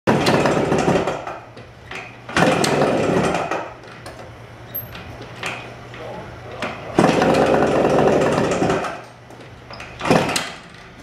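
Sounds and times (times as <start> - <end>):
two-stroke engine revving: 7.0 - 9.0.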